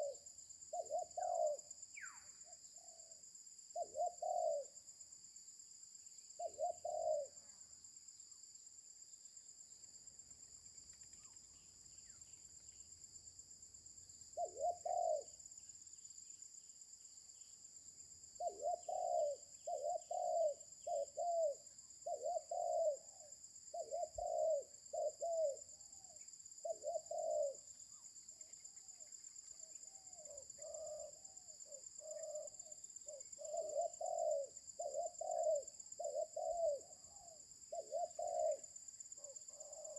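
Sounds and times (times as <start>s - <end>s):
dove cooing: 0.0s - 2.2s, 3.8s - 4.8s, 6.4s - 7.4s, 14.4s - 15.4s, 18.4s - 27.6s, 29.8s - 39.9s.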